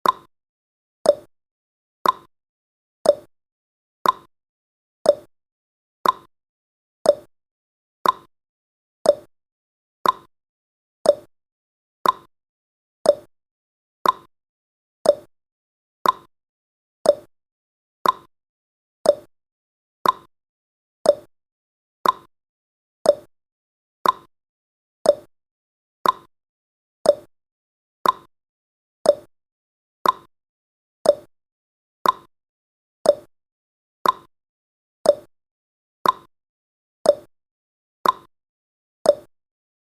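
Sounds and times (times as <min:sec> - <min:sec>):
clock ticking: 0:02.0 - 0:02.3, 0:04.0 - 0:04.3, 0:06.0 - 0:06.3, 0:08.0 - 0:08.3, 0:10.0 - 0:10.3, 0:12.0 - 0:12.3, 0:14.0 - 0:14.3, 0:15.1 - 0:15.3, 0:16.0 - 0:16.3, 0:18.0 - 0:18.3, 0:19.1 - 0:19.3, 0:20.0 - 0:20.3, 0:21.1 - 0:21.3, 0:22.0 - 0:22.3, 0:24.0 - 0:24.3, 0:26.0 - 0:26.3, 0:28.0 - 0:28.3, 0:29.1 - 0:29.3, 0:30.0 - 0:30.3, 0:31.1 - 0:31.3, 0:32.0 - 0:32.3, 0:33.1 - 0:33.3, 0:34.0 - 0:34.3, 0:35.1 - 0:35.3, 0:36.0 - 0:36.3, 0:38.0 - 0:38.3, 0:39.1 - 0:39.3.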